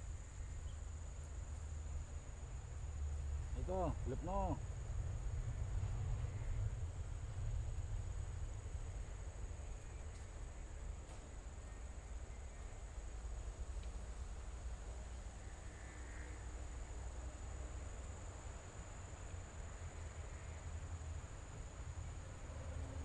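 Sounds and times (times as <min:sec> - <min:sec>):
low uneven rumble: 0:00.0 - 0:18.2
insects chirring: 0:00.0 - 0:23.0.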